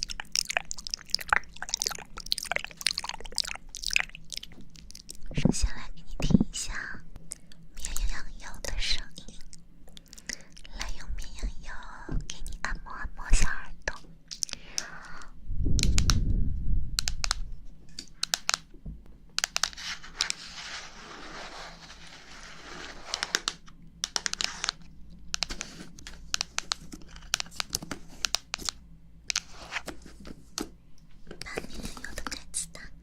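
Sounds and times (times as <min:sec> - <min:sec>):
low rumble: 0:15.4 - 0:17.6
sharp clicks: 0:17.0 - 0:17.4, 0:18.2 - 0:18.7
crinkling and scratching: 0:19.4 - 0:24.8, 0:25.4 - 0:32.6.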